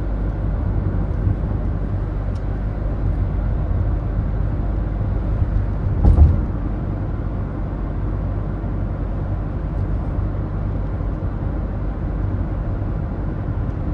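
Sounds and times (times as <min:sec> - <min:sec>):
engine and road noise drone: 0:00.0 - 0:13.9
brief thump: 0:06.0 - 0:06.7.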